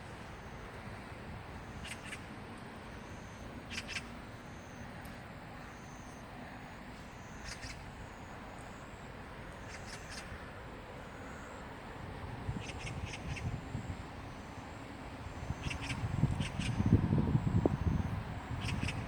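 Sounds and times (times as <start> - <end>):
bird calling: 1.6 - 2.3, 3.0 - 4.8, 7.0 - 8.8, 9.5 - 10.4, 12.6 - 13.6, 15.4 - 16.9, 18.6 - 19.0.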